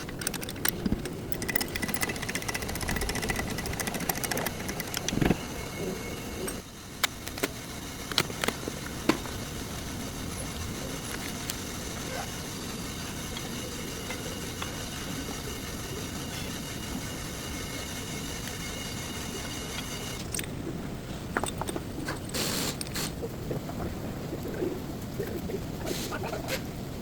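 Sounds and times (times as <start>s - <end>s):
sharp clicks: 0.0s - 5.4s
faint high whine: 1.2s - 27.0s.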